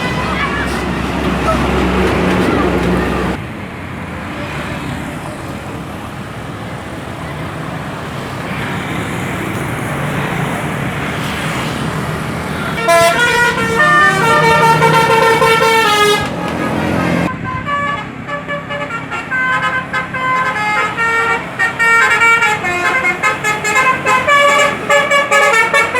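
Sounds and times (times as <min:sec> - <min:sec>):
bus horn playing melody: 0:00.0 - 0:03.4, 0:12.8 - 0:25.9
traffic noise: 0:00.0 - 0:25.9.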